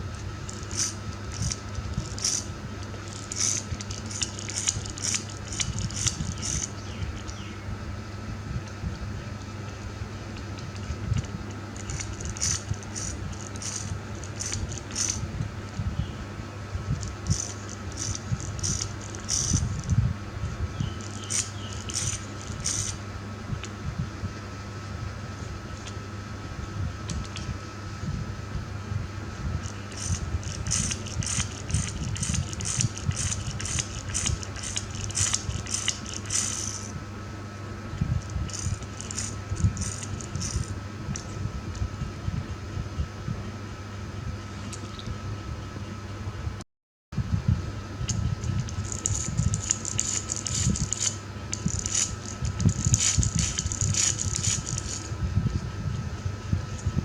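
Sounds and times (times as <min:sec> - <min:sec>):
steady low hum: 0:00.0 - 0:46.6, 0:47.2 - 0:57.0
toy cars clicking and rattling: 0:00.5 - 0:02.4, 0:12.3 - 0:13.8, 0:17.0 - 0:19.6, 0:21.3 - 0:22.9, 0:30.0 - 0:31.9, 0:32.6 - 0:36.9, 0:38.5 - 0:40.6, 0:48.8 - 0:55.1.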